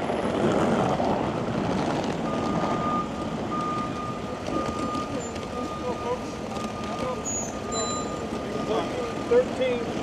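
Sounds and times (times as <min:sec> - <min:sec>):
street traffic passing: 0:00.0 - 0:10.0
reversing alarm beeps: 0:02.3 - 0:09.0.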